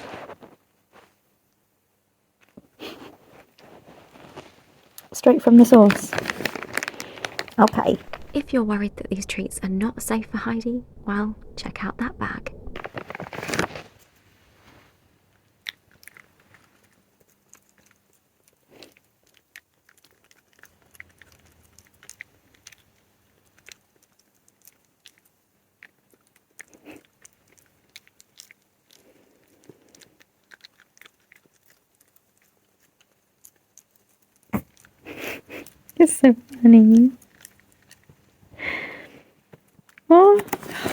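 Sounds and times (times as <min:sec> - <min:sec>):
fox chewing crunchy treats: 0:03.4 - 0:09.0, 0:15.3 - 0:36.0, 0:36.7 - 0:40.1.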